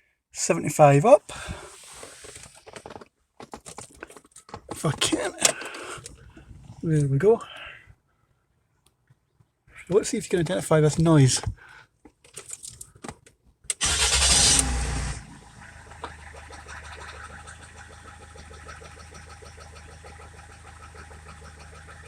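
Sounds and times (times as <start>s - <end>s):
car engine starting and idling: 13.7s - 22.0s
rapid engine tapping: 15.5s - 22.0s.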